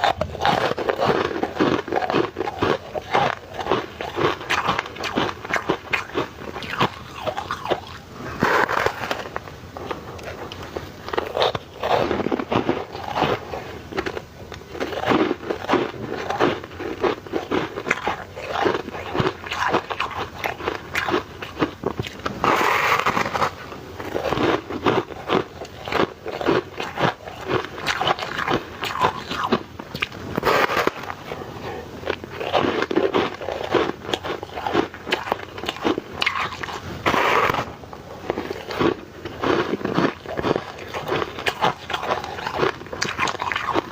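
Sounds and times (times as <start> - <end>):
person chewing ice: 0.0 - 43.9.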